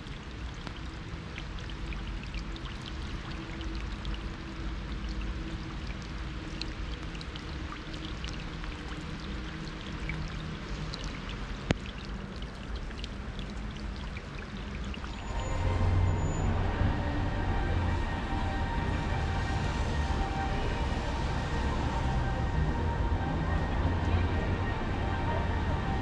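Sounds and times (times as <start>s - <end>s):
rain on street: 0.0s - 26.0s.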